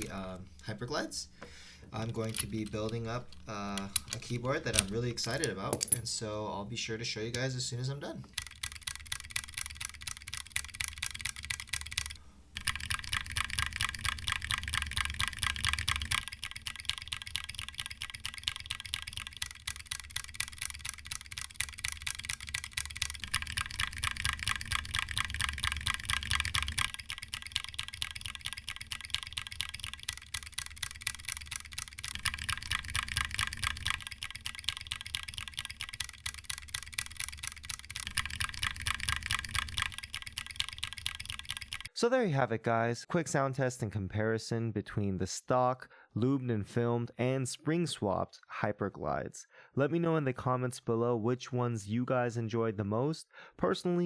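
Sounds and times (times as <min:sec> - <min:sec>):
typing on mechanical keyboard: 0:00.0 - 0:00.4, 0:02.0 - 0:06.1, 0:08.2 - 0:41.9.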